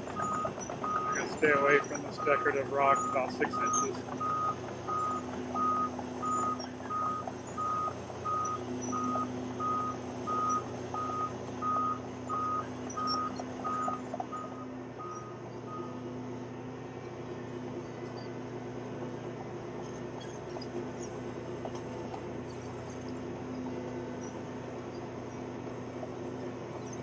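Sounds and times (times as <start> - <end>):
reversing alarm beeping: 0.0 - 16.2
diesel engine running: 0.0 - 27.0.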